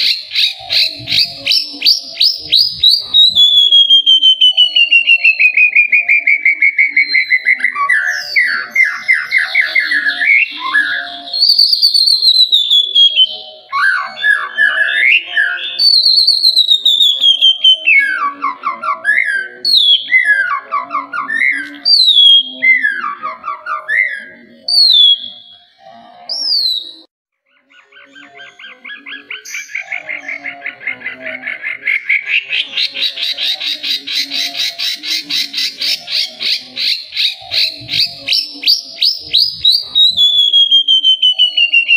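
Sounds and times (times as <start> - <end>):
bird singing whistled phrases: 0.0 - 27.1, 35.2 - 41.9.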